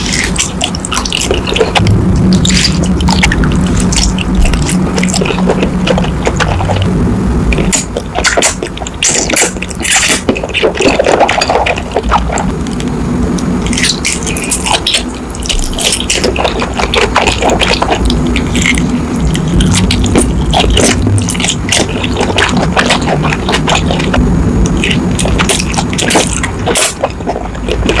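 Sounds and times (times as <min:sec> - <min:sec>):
food crackles and wet clicks: 0:00.0 - 0:06.9, 0:07.5 - 0:28.0.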